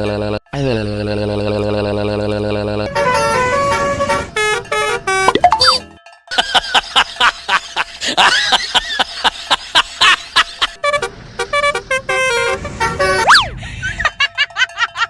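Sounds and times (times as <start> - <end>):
multi-tone bus horn melody: 2.8 - 5.4, 10.8 - 13.3.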